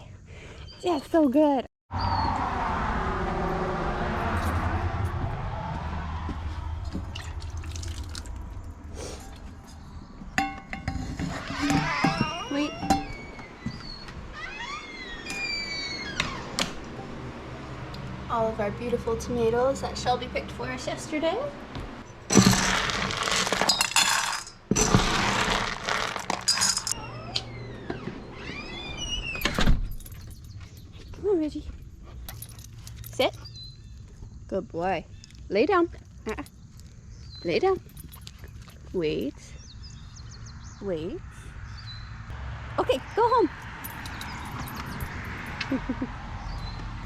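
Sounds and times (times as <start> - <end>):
water dripping: 6.8 - 8.8
water pouring into container: 7.1 - 8.6.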